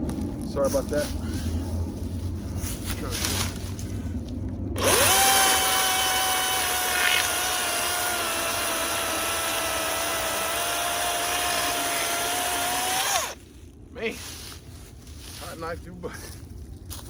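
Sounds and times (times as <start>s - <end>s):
chainsaw cutting a log: 4.8s - 13.4s.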